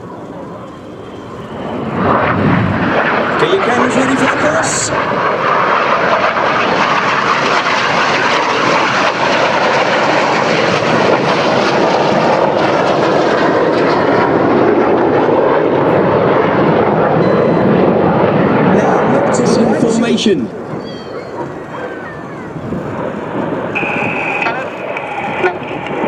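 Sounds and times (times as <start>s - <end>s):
jet aircraft roaring past: 0.0s - 26.0s.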